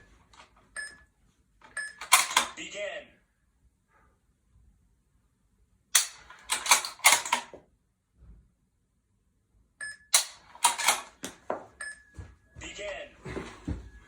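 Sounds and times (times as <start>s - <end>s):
rifle bolt metallic clicks: 6.0s - 7.5s.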